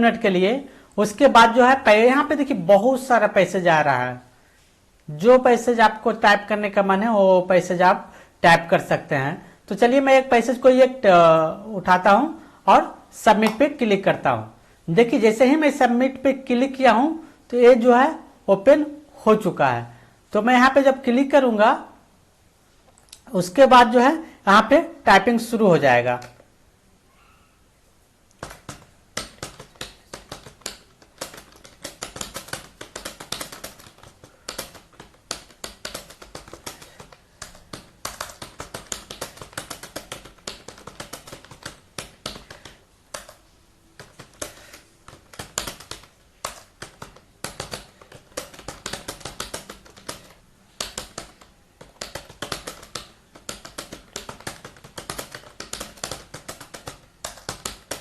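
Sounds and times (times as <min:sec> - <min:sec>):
keyboard typing: 0:13.3 - 0:13.8, 0:26.1 - 0:26.5, 0:28.3 - 0:58.0.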